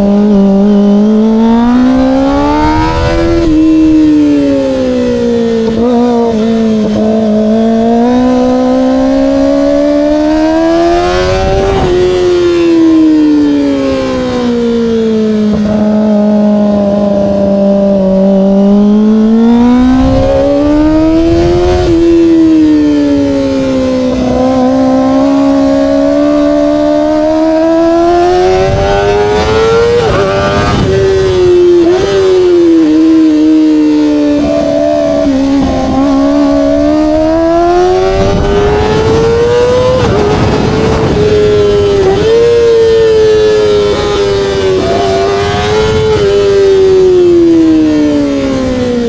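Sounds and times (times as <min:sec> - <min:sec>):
motorcycle engine revving: 0:00.0 - 0:49.0
wind rushing: 0:19.4 - 0:47.0.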